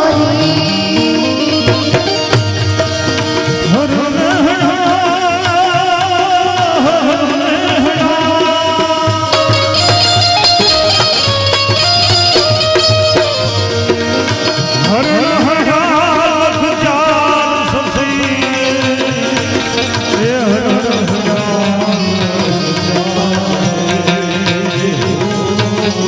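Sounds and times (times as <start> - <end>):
tabla: 0.0 - 26.0
sliding melodic line: 9.3 - 26.0.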